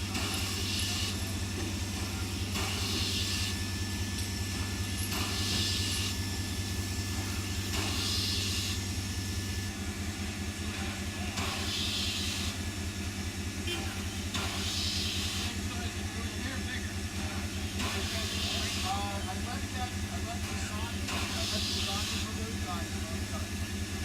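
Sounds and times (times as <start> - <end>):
steam hissing: 0.0 - 9.7, 11.3 - 12.7, 14.3 - 15.7, 17.2 - 23.4
steam locomotive humming: 0.0 - 24.0.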